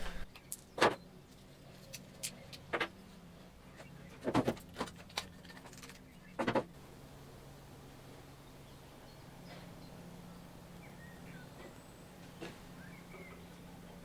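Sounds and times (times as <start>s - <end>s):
faint steady hum: 6.7s - 14.0s.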